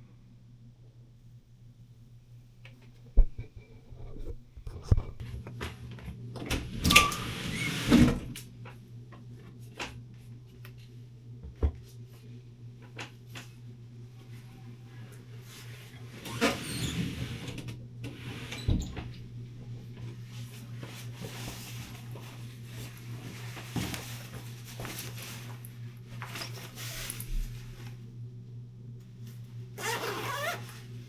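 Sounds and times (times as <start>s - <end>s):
steady low hum: 0.0s - 6.9s, 7.8s - 31.0s.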